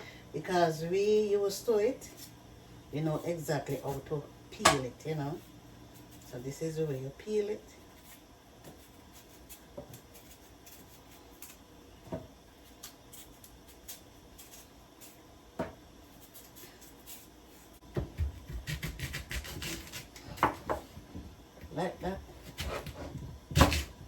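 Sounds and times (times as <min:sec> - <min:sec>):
knife scraping sweet potato: 0:05.1 - 0:11.6, 0:12.6 - 0:15.3, 0:16.0 - 0:20.8, 0:21.8 - 0:24.0.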